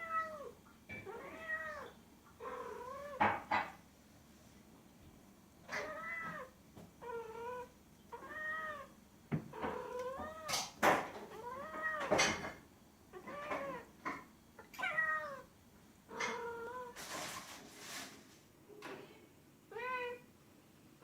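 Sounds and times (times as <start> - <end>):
cat meowing: 5.7 - 8.9, 14.7 - 15.5, 19.7 - 20.2.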